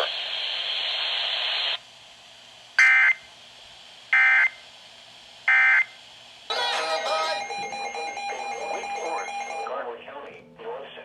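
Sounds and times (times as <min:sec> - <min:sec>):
static hiss: 0:00.0 - 0:08.1
warbling digital data tones: 0:06.5 - 0:09.7.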